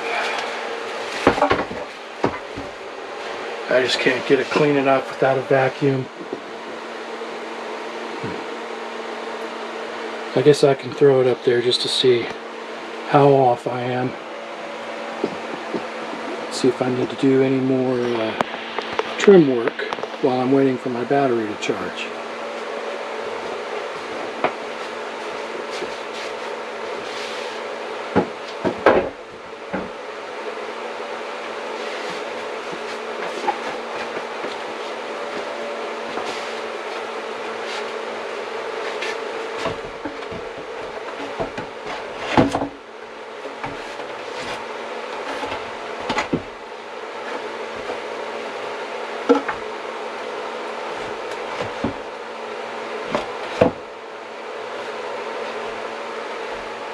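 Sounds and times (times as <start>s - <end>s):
steady low hum: 0.0s - 56.9s
wooden boards knocking: 1.1s - 2.8s.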